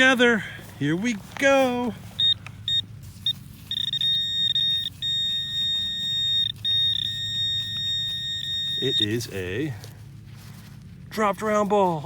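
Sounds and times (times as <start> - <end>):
pinpointer electronic beeps: 2.2 - 9.6.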